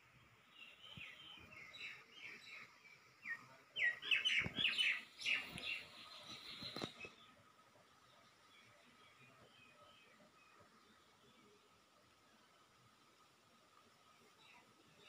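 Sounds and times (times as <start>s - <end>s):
bird chirping: 0.4s - 7.4s.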